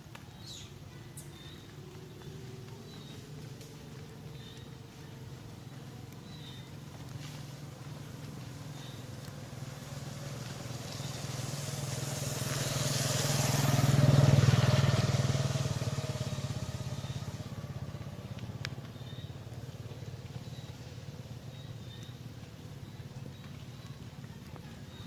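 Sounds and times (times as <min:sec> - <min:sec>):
vehicle engine passing by: 0:00.2 - 0:25.0.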